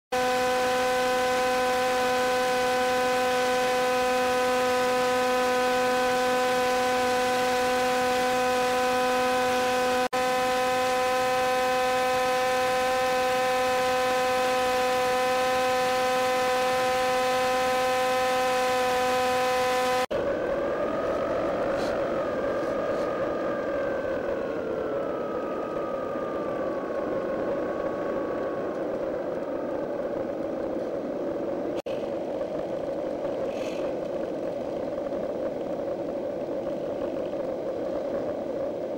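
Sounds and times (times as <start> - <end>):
motor-like sound: 0.1 - 20.1
steady electrical buzz: 0.1 - 23.1.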